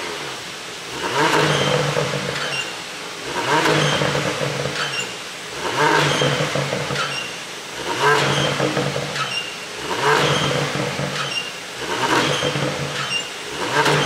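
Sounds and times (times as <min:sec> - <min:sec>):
car engine revving: 0:00.0 - 0:14.0
exhaust pops and crackles: 0:03.3 - 0:05.0, 0:05.6 - 0:07.1, 0:07.8 - 0:14.0.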